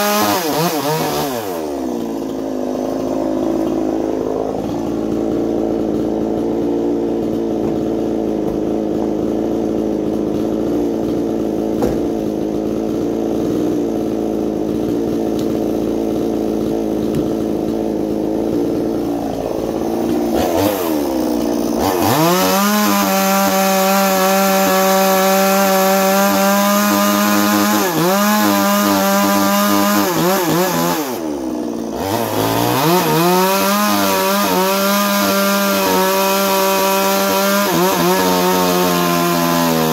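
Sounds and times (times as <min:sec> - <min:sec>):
chainsaw idling and revving: 0:00.0 - 0:39.9.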